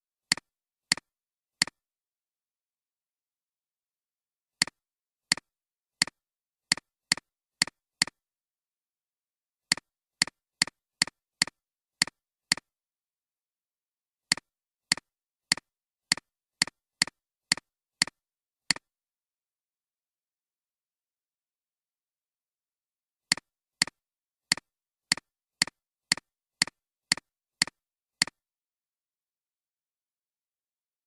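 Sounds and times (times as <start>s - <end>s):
computer mouse clicks: 0.3s - 1.8s, 4.6s - 8.2s, 9.7s - 12.7s, 14.3s - 18.9s, 23.3s - 28.4s.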